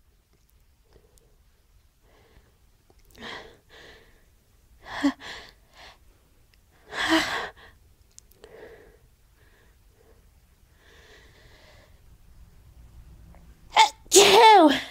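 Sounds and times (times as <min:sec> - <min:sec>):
woman sneezing: 0:13.8 - 0:14.9.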